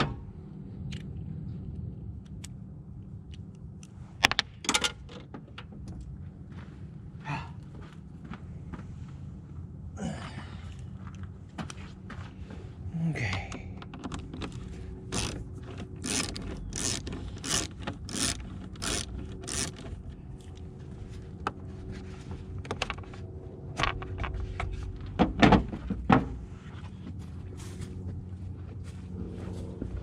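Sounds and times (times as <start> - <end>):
tool clicks: 13.9 - 15.4, 16.0 - 20.6
tool scraping strokes: 16.0 - 19.9.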